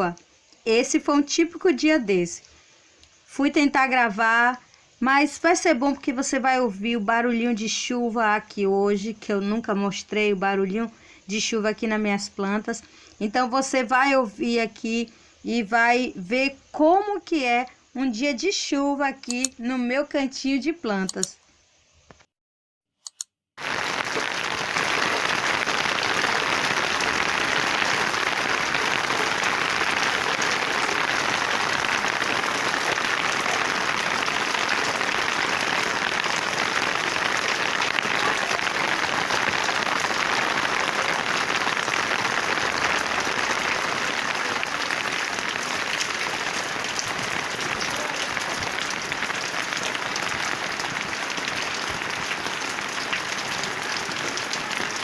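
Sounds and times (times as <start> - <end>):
rain falling on plants: 23.6 - 55.0.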